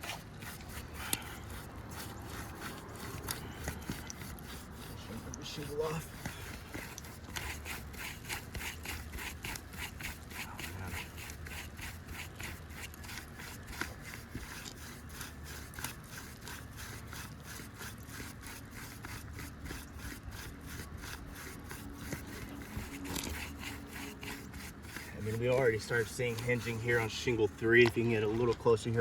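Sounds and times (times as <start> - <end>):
tool scraping under roof shingle: 0.0 - 29.0.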